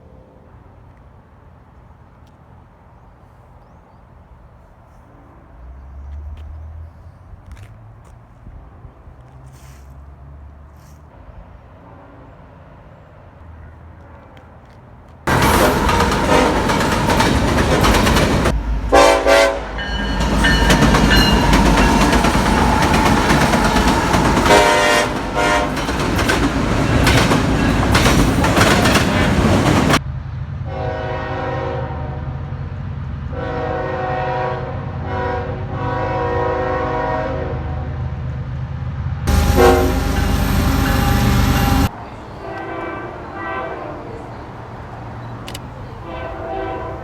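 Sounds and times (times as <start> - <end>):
train rumble and wheel clatter: 13.4 - 47.0
train horn blasts: 15.3 - 29.5, 30.7 - 32.4, 33.3 - 38.0, 39.3 - 44.4, 45.9 - 47.0
train horn chords: 15.3 - 30.0, 30.7 - 32.4, 33.3 - 38.1, 39.3 - 44.5, 45.9 - 47.0.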